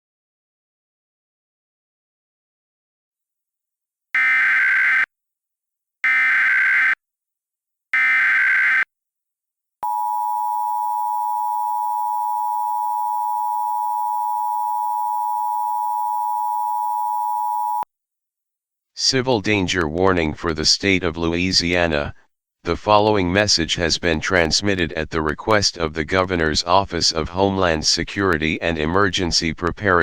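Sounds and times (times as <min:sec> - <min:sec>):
steady two-tone alert signal: 0:09.8 - 0:17.8.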